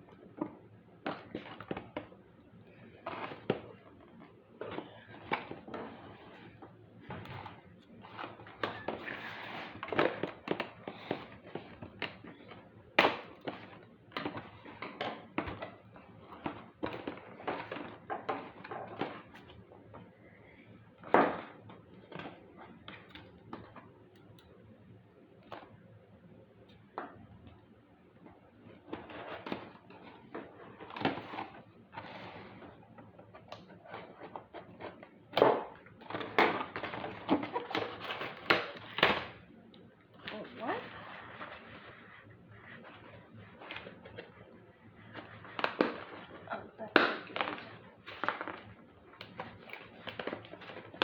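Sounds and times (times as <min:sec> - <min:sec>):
cardboard and plastic rustling: 0:00.1 - 0:23.9, 0:28.2 - 0:39.4, 0:40.2 - 0:51.0.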